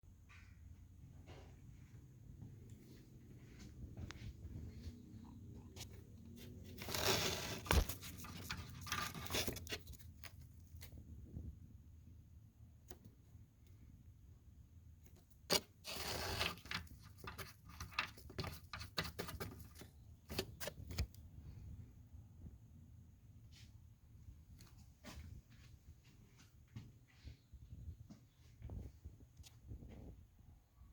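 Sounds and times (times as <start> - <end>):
rustling and scraping: 2.7 - 11.6, 15.2 - 21.2, 24.6 - 27.5.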